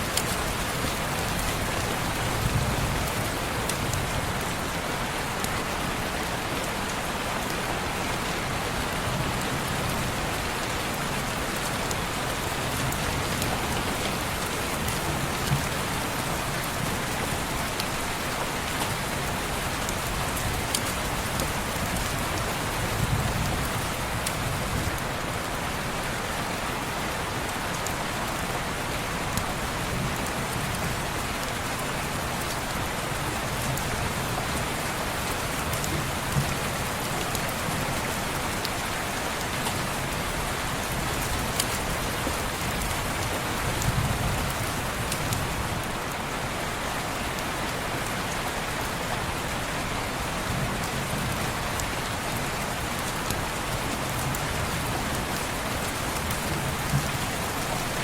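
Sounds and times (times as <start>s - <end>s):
rain pattering on window: 50.5s - 58.0s.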